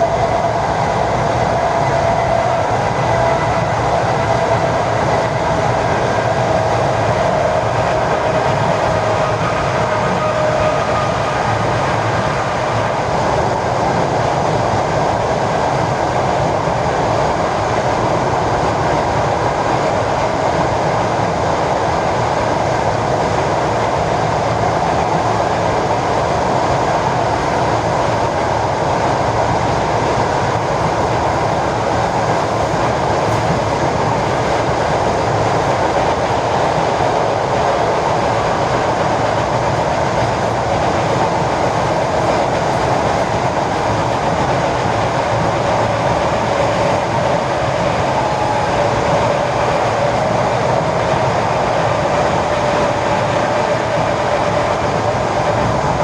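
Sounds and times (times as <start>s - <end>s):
train rolling noise: 0.0s - 56.0s.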